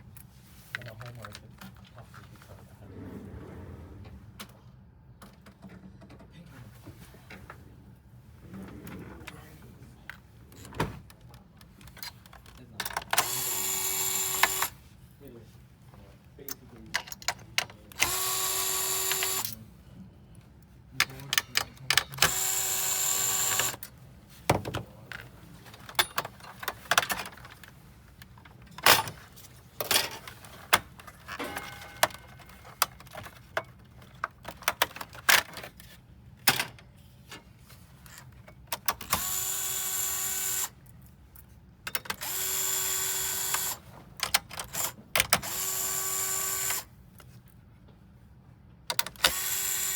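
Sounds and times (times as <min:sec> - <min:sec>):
electric screwdriver whirring: 0:13.2 - 0:14.8, 0:18.0 - 0:19.4, 0:22.3 - 0:23.8, 0:39.1 - 0:40.7, 0:42.2 - 0:43.8, 0:44.8 - 0:46.9, 0:49.2 - 0:49.9.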